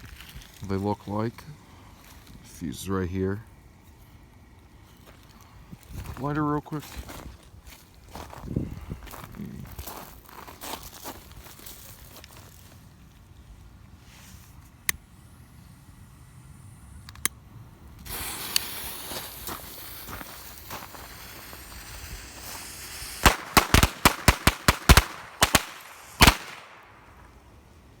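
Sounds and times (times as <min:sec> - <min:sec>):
fuse hissing and sputtering: 0:14.7 - 0:26.4
sharp clicks: 0:17.0 - 0:17.4
firecrackers banging: 0:18.0 - 0:27.2.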